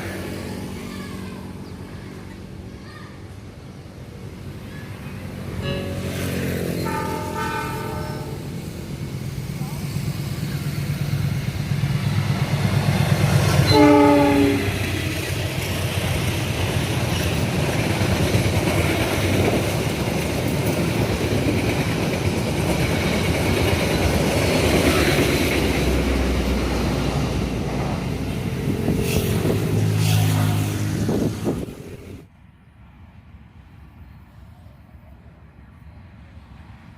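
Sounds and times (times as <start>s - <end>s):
train rumbling past: 0.0s - 36.9s
train horn blast: 5.6s - 8.6s, 13.6s - 15.2s.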